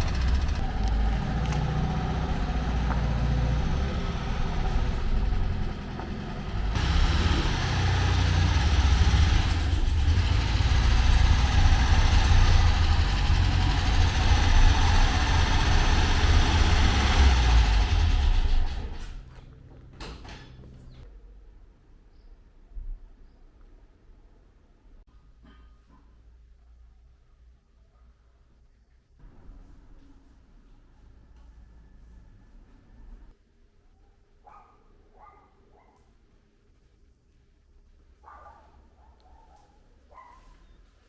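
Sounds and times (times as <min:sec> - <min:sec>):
car engine rumbling: 0:00.0 - 0:21.0.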